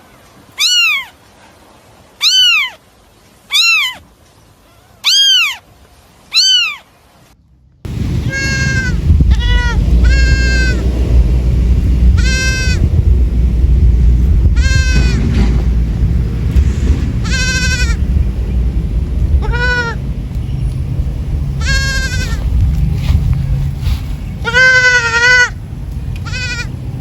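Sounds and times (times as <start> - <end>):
high meow-like animal calls: 0.6 - 1.2, 2.2 - 2.8, 3.5 - 4.0, 4.6 - 5.7, 6.3 - 6.9
loud steady low rumble: 7.4 - 27.0
goat bleating: 8.2 - 10.8, 12.1 - 12.9, 14.5 - 15.3, 17.2 - 18.0, 19.4 - 20.0, 21.6 - 22.5, 24.4 - 25.6, 26.2 - 26.7.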